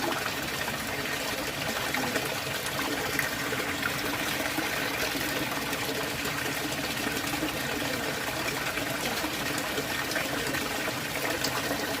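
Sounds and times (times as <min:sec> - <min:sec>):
water running and splashing: 0:00.0 - 0:12.0.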